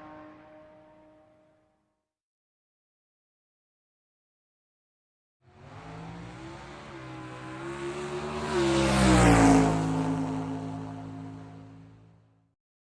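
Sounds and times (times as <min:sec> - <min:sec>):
race car passing by: 0:05.5 - 0:12.1.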